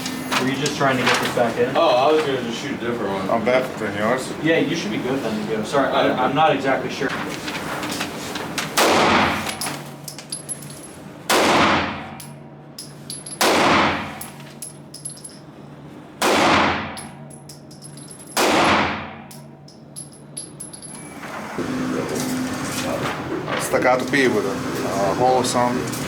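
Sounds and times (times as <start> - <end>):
pistol shots ringing: 11.3 - 12.3, 13.2 - 14.3, 16.2 - 17.6, 18.2 - 19.5.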